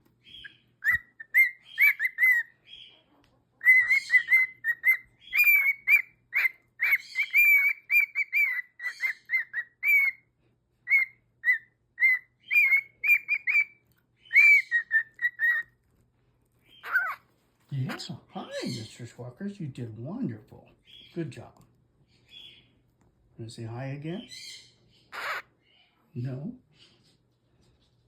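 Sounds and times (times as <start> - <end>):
cockatiel whistling: 0.2 - 2.9, 3.6 - 15.7, 16.7 - 17.2.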